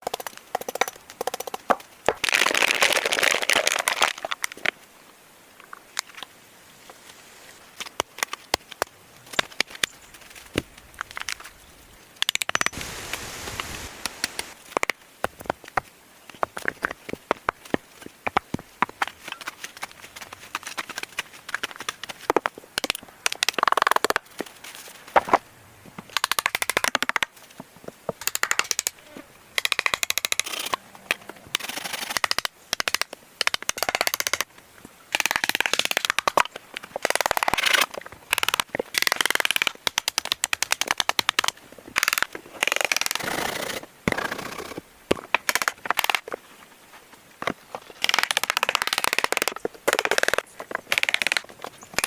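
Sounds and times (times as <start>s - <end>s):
rustling: 5.6s - 12.0s, 12.6s - 14.8s, 15.4s - 22.7s, 24.2s - 25.5s
wood and twigs snapping: 7.8s - 11.6s, 12.2s - 25.4s, 26.0s - 27.4s, 28.1s - 29.0s, 29.6s - 34.5s, 35.1s - 43.2s, 45.1s - 46.4s, 47.4s - 52.0s.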